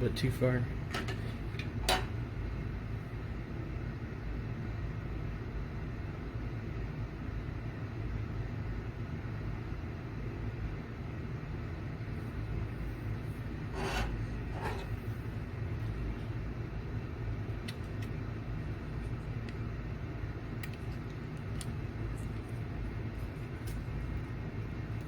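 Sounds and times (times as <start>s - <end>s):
low background rumble: 0.0s - 25.0s
chip scraping: 13.6s - 15.1s.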